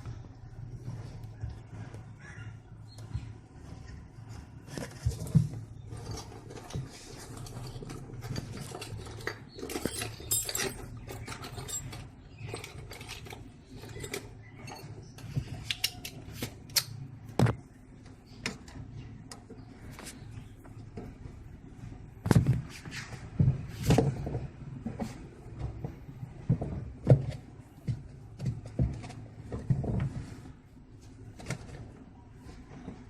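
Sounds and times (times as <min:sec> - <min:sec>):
spanner clinking and knocking on metal: 0:08.2 - 0:14.9.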